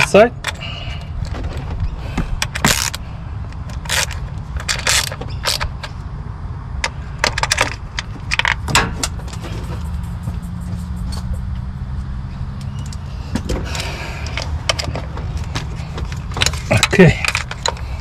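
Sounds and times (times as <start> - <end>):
steady low hum: 5.7 - 18.0.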